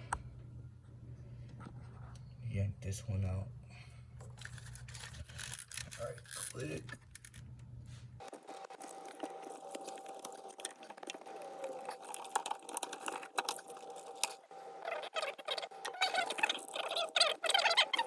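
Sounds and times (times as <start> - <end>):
plastic clicks and scrapes: 4.3 - 7.4.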